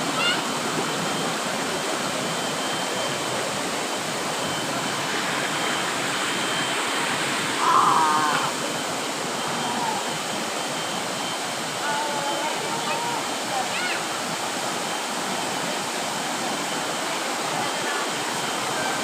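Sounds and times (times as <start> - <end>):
person calling: 7.6 - 8.6.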